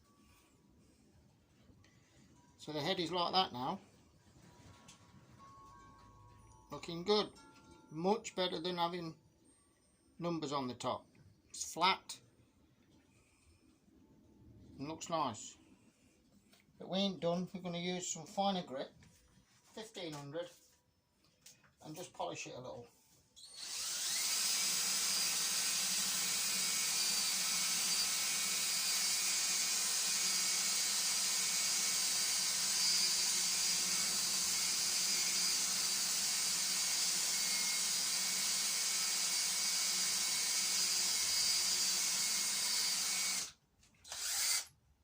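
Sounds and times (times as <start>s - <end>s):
small power tool whirring: 23.4s - 44.7s.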